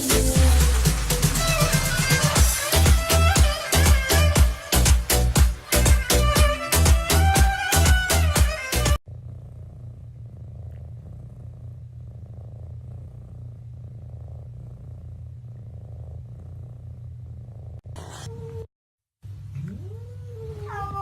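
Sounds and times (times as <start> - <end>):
cat purring: 9.0 - 18.7.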